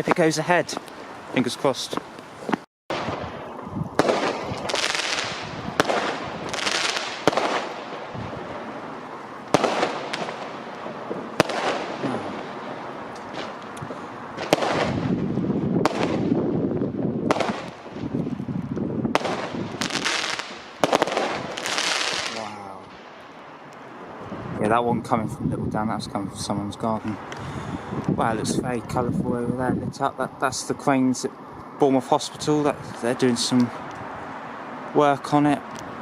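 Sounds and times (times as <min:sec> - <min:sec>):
fireworks bangs: 0:00.0 - 0:24.5
fireworks crackling and hissing: 0:00.0 - 0:24.6.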